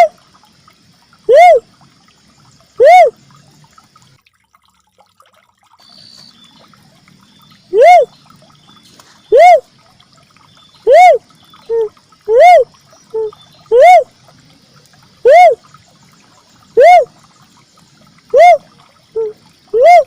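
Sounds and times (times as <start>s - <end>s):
dove calling: 7.7s - 8.2s, 8.8s - 9.6s, 10.8s - 14.1s, 15.2s - 15.7s, 16.7s - 17.1s, 18.3s - 18.6s, 19.2s - 20.0s.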